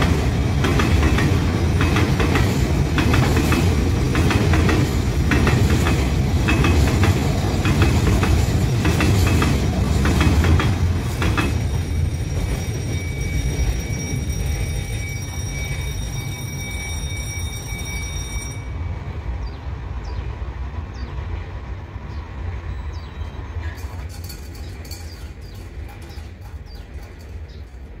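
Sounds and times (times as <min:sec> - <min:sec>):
freight train rumbling by: 0:00.0 - 0:28.0
high-pitched ringing tone: 0:11.6 - 0:19.2.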